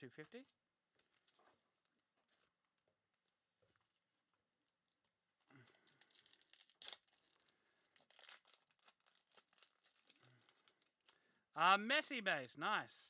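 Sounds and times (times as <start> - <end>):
foil pack tearing and crinkling: 5.5 - 11.2.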